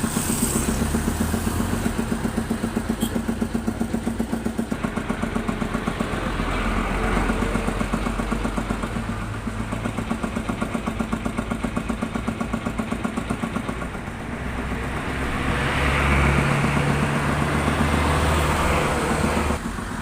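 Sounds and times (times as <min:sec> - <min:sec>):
traffic: 0:00.0 - 0:20.0
vehicle engine idling: 0:00.0 - 0:20.0.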